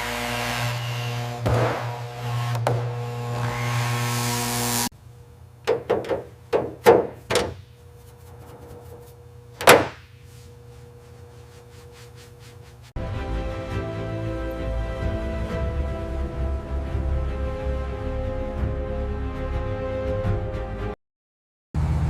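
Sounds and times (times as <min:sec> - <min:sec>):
sharp knocks and thuds: 0:01.4 - 0:02.0, 0:05.7 - 0:07.8, 0:09.6 - 0:10.2
faint steady hum: 0:04.9 - 0:12.9
music: 0:13.0 - 0:21.0.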